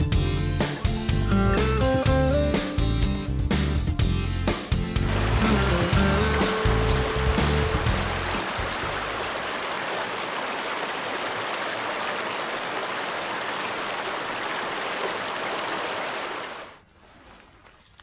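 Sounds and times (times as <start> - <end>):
rushing water noise: 5.0 - 16.8.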